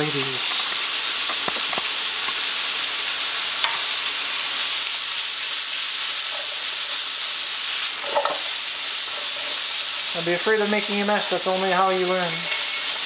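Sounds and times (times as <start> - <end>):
meat and onions sizzling in oil: 0.0 - 13.0.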